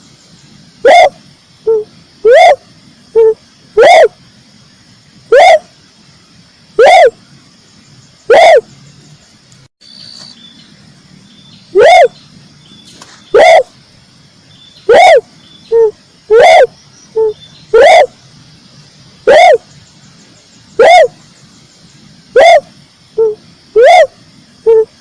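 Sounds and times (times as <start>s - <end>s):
dove calling: 0.0s - 4.2s, 5.3s - 5.8s, 6.8s - 7.2s, 8.1s - 9.2s, 11.5s - 13.8s, 14.5s - 25.0s.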